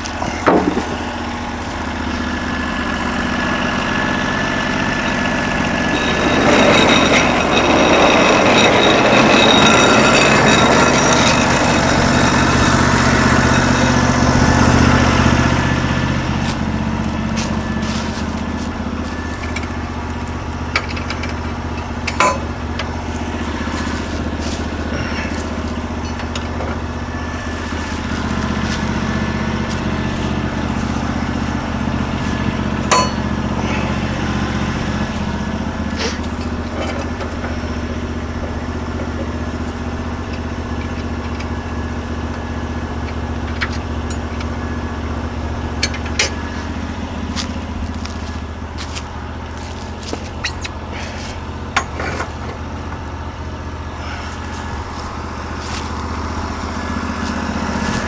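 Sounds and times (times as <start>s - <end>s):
sharp clicks and knocks: 0.0s - 1.3s, 16.4s - 26.9s
sawmill engine running: 0.0s - 58.0s.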